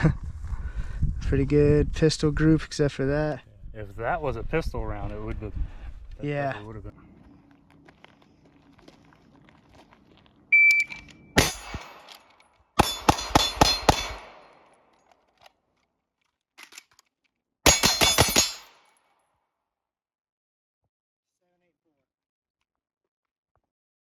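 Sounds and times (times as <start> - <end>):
shot timer beep: 10.6 - 11.1
gunshots: 11.4 - 14.7.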